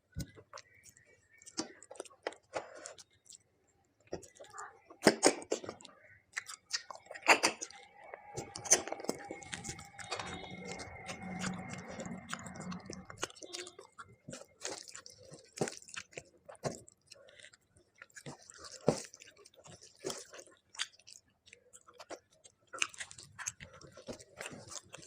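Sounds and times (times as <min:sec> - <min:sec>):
person chewing: 0:00.0 - 0:25.0.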